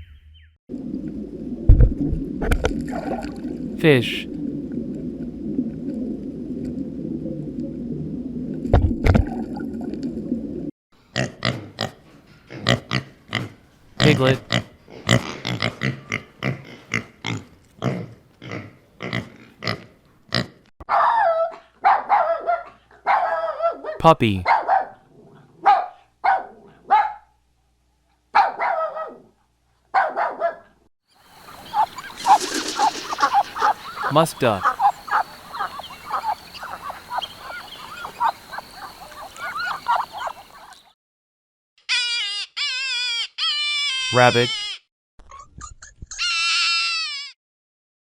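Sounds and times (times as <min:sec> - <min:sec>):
piglet grunting: 0:11.2 - 0:20.6, 0:31.7 - 0:38.3
duck calling with chirping notes: 0:31.4 - 0:40.9.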